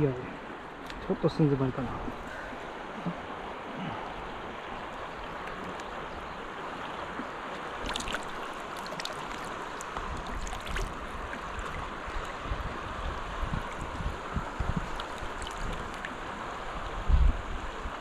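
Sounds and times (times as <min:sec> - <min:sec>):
river water rushing: 0:00.0 - 0:18.0
light splashes: 0:06.8 - 0:12.4, 0:14.8 - 0:16.2
wind buffeting microphone: 0:10.0 - 0:16.0, 0:16.6 - 0:18.0.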